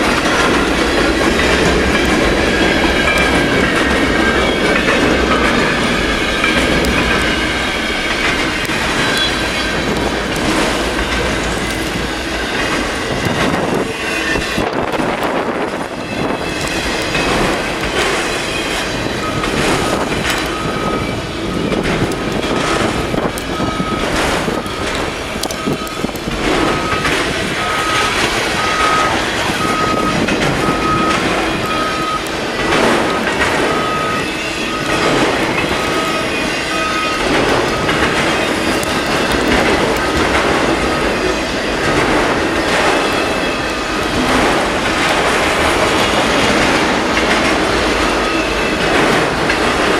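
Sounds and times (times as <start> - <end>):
train rumble: 0.0 - 49.9
train wheels clacking over rail joints: 0.0 - 49.9
short high beeps: 26.7 - 32.2.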